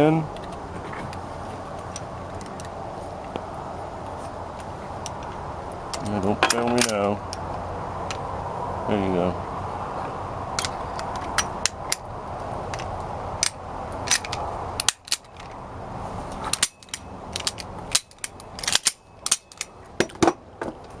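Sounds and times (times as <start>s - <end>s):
pistol parts clicking and snapping: 0.3s - 1.2s, 1.8s - 3.4s, 4.6s - 8.2s, 10.6s - 12.1s, 12.7s - 15.6s, 16.4s - 20.9s.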